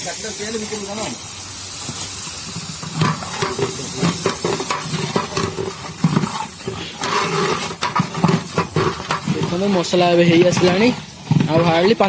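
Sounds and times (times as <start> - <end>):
paste sizzling in oil: 0.0 - 12.0
ladle scraping pot: 2.5 - 12.0.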